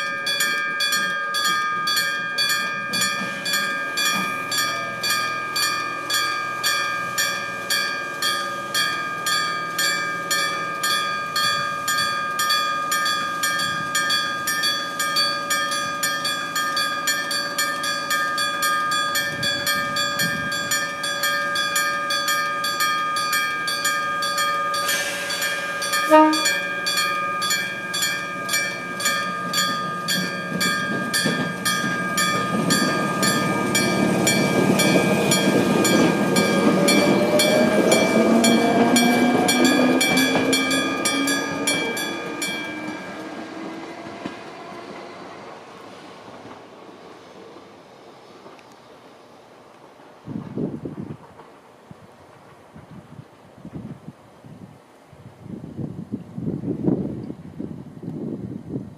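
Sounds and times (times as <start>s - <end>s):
level crossing warning bell: 0.0s - 45.1s
train running: 0.0s - 58.9s.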